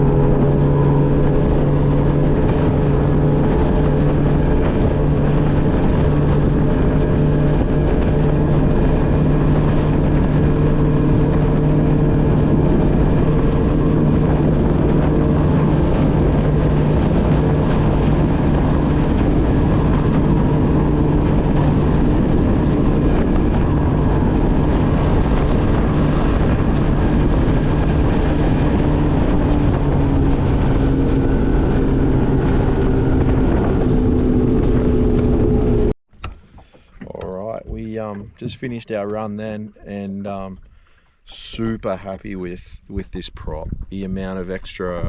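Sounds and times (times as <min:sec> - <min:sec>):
steady rushing noise: 0:00.0 - 0:36.0
outboard motor running hard: 0:00.0 - 0:42.2.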